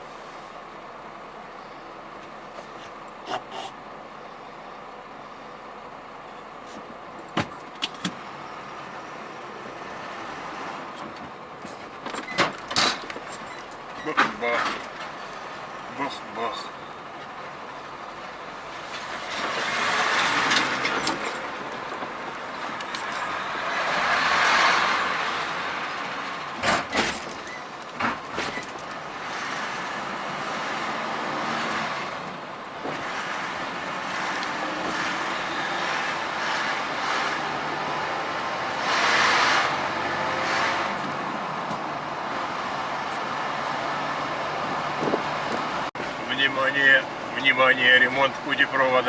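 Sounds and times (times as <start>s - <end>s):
truck driving on road: 0.0s - 49.0s
sharp knocks of vehicle jolting: 26.6s - 28.8s.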